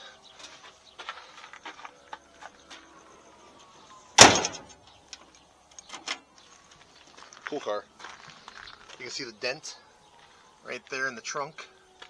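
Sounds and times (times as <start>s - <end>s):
car trunk lid slamming: 4.2s - 4.7s.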